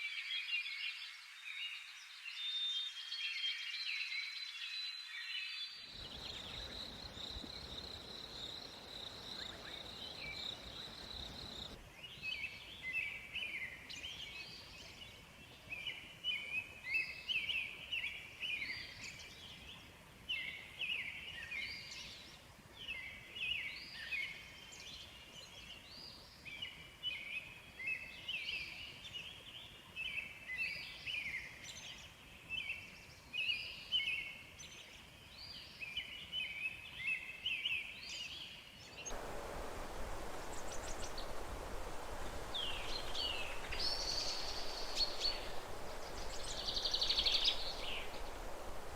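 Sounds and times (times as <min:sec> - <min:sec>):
steady high buzz: 0:39.1 - 0:48.9.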